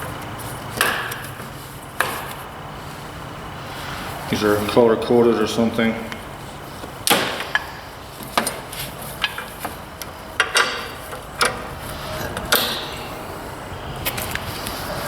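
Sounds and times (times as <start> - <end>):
metal hose couplers clicking: 7.0 - 13.1.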